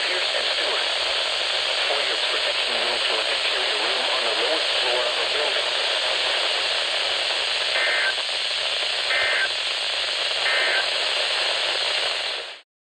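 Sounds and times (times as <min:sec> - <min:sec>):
radio static hiss: 0:00.0 - 0:12.6
two-tone warbling data bursts: 0:07.8 - 0:08.2, 0:09.1 - 0:09.5.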